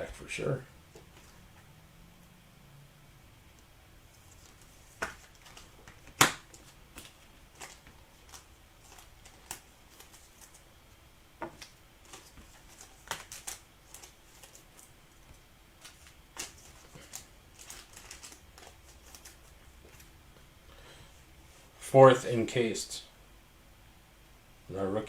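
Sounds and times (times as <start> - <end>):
cards clicking and tapping: 4.4 - 10.6, 11.4 - 20.1.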